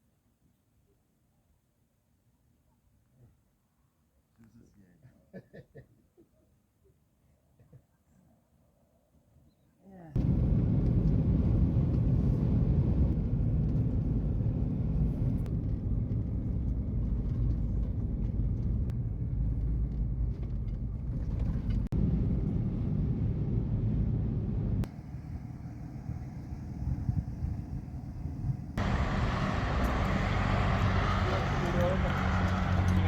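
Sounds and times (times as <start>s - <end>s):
vehicle engine rumbling under load: 10.2s - 33.0s.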